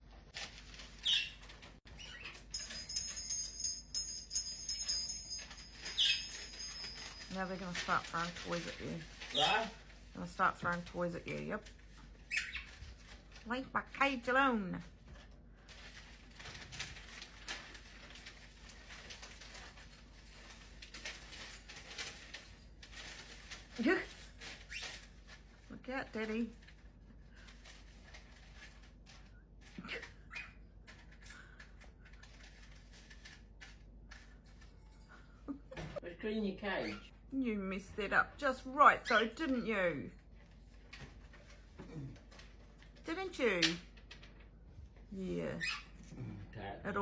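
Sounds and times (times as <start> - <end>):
birds clicking and rustling in cage: 0.4 - 10.0, 15.1 - 25.6, 26.5 - 35.3, 40.4 - 45.0
high ringing and quick rattling: 2.3 - 7.9.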